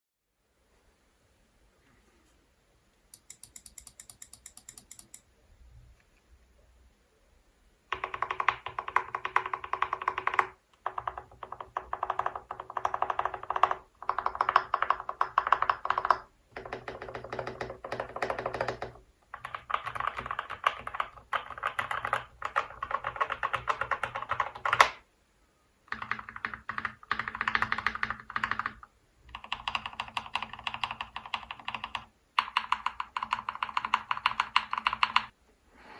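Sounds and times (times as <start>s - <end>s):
fast typing on mechanical keyboard: 3.2s - 5.2s, 7.9s - 25.0s, 25.9s - 35.3s.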